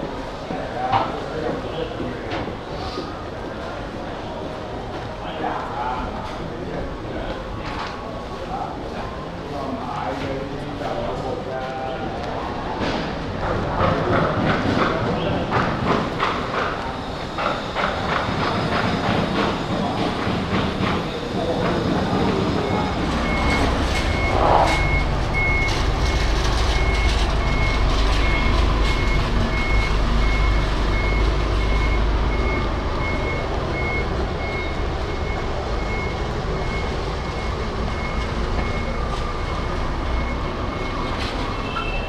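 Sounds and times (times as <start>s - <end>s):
truck engine rumbling: 0.0s - 42.0s
reversing alarm beeping: 15.2s - 42.0s.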